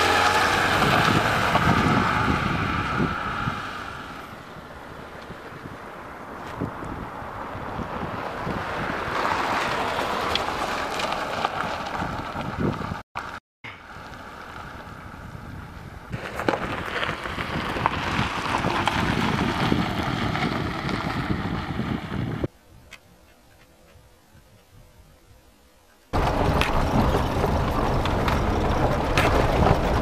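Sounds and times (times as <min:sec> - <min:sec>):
road and wind noise: 0:00.0 - 0:30.0
vehicle knocks and jolts: 0:26.2 - 0:30.0.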